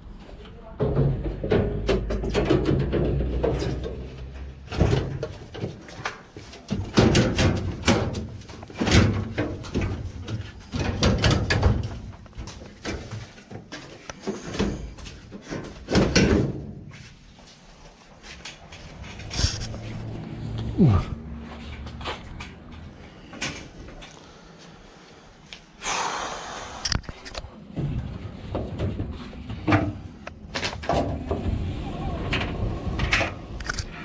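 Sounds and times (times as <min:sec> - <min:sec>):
dryer parts knocking and rattling: 0:00.6 - 0:17.4, 0:22.2 - 0:24.1, 0:27.6 - 0:33.8.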